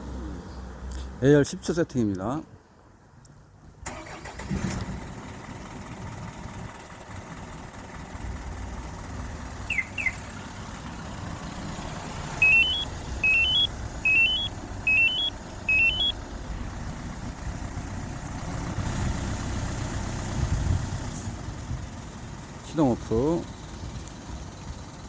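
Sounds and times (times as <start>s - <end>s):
diesel truck engine idling: 3.8s - 25.0s
rising electronic alarm beeps: 9.7s - 10.2s, 12.4s - 16.2s
short falling chirps: 12.4s - 16.1s.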